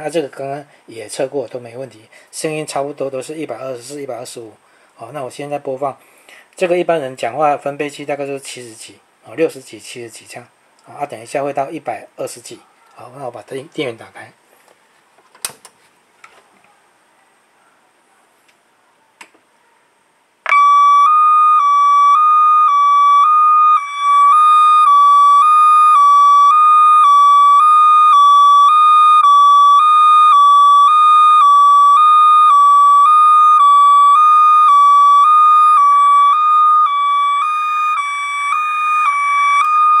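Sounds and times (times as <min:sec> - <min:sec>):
warbling alarm tone: 0:20.5 - 0:40.0.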